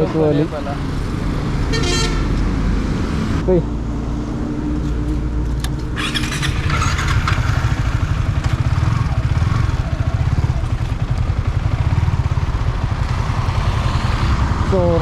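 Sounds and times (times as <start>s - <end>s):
motorcycle engine running: 5.5s - 15.0s.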